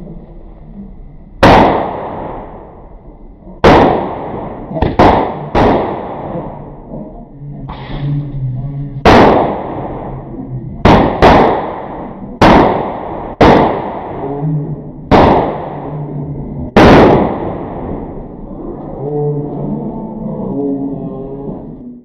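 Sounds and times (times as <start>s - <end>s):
firecracker bangs echoing: 1.4s - 2.7s, 3.6s - 6.7s, 9.0s - 10.2s, 10.8s - 14.3s, 15.1s - 16.0s, 16.7s - 18.1s.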